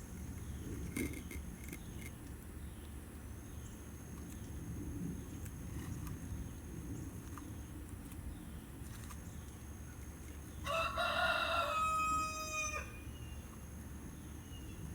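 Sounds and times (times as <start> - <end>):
low outdoor background noise: 0.0 - 14.9
rooster crowing: 10.6 - 13.1.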